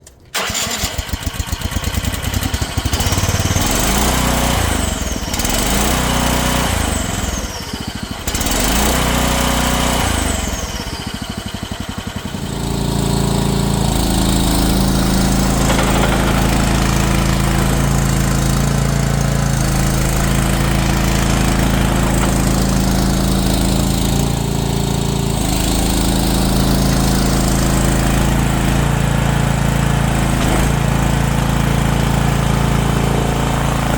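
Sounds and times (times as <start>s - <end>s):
loader engine running: 0.3s - 33.9s.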